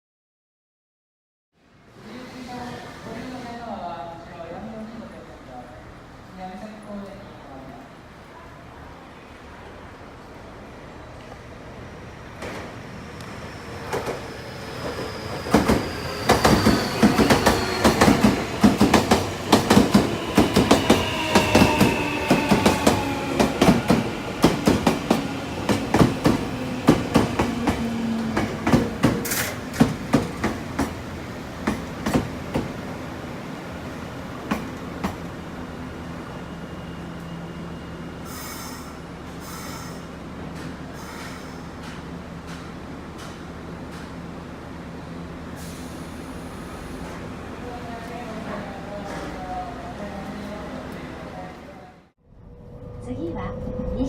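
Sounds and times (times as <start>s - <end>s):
train low hum: 1.7s - 54.0s
brake squeal: 13.5s - 18.2s, 36.3s - 40.1s
train wheels clattering: 13.8s - 31.0s
air hisses: 38.2s - 40.1s.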